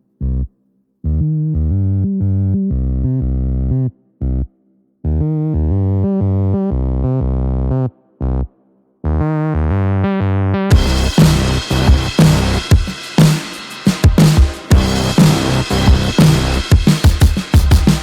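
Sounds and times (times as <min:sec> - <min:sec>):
sustained synthesizer chords: 0:10.7 - 0:12.7, 0:14.7 - 0:16.7
beat-driven electronic music: 0:10.7 - 0:18.0.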